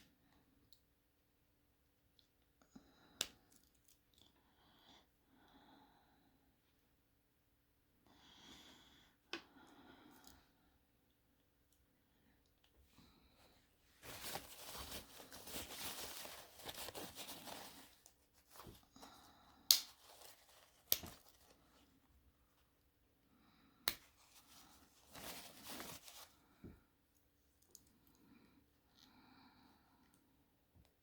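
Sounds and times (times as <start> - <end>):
rustling and wiping: 13.4 - 18.9, 19.9 - 21.9, 24.1 - 26.5.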